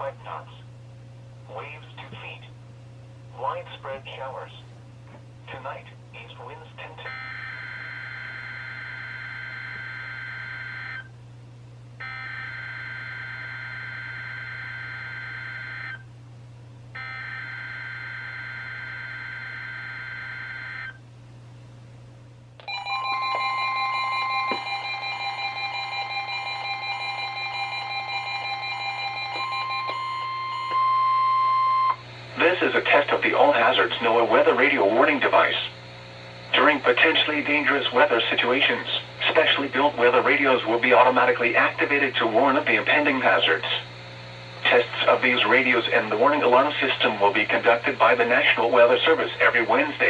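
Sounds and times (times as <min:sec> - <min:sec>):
weather radio alarm tones: 0:07.0 - 0:11.1, 0:12.0 - 0:16.0, 0:17.0 - 0:21.0, 0:22.7 - 0:35.6
pulsing beeps: 0:22.7 - 0:32.0.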